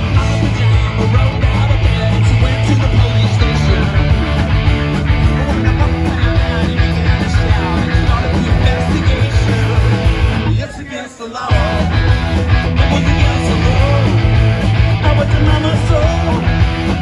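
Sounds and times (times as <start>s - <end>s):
loud guitar rock music: 0.0s - 17.0s.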